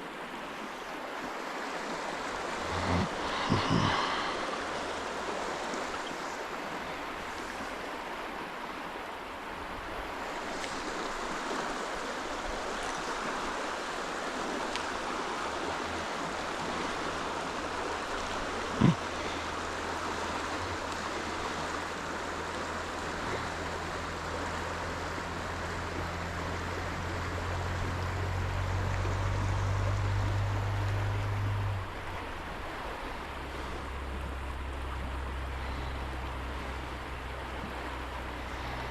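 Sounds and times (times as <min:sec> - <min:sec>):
stream water running: 0:00.0 - 0:38.9
low steady hum: 0:02.2 - 0:07.7, 0:14.5 - 0:38.9.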